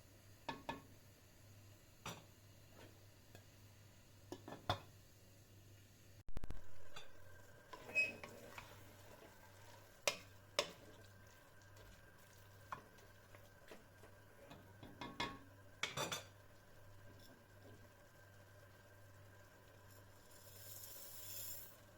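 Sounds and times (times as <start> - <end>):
spoon stirring in pot: 6.8 - 16.4.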